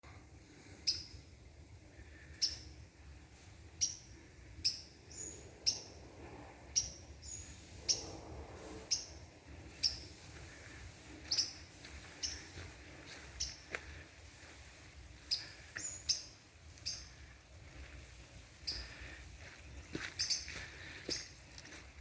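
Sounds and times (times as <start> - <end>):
bird chirping: 0.8 - 1.3, 2.1 - 2.8, 3.7 - 6.1, 6.7 - 13.8, 15.2 - 17.4, 18.1 - 22.0.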